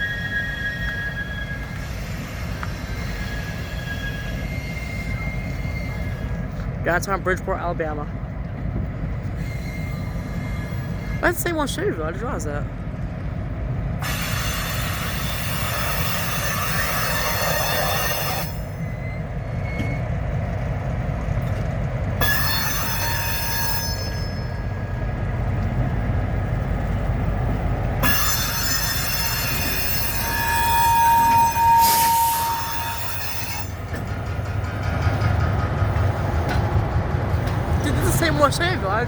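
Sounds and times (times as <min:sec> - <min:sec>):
wheel squeal on rails: 0:00.0 - 0:06.8, 0:09.0 - 0:11.5, 0:14.0 - 0:20.7, 0:22.2 - 0:25.1, 0:28.0 - 0:39.0
train rumbling past: 0:00.0 - 0:39.0.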